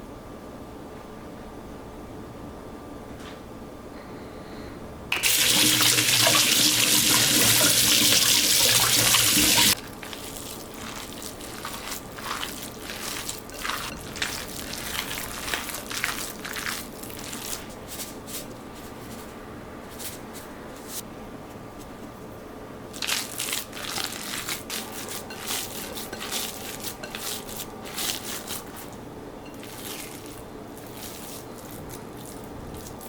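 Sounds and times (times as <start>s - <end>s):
tap water running into sink: 5.1s - 9.8s.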